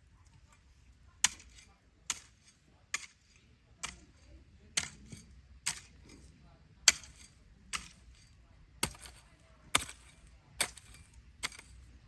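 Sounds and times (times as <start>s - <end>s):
hand tool striking something hard: 8.8s - 11.6s.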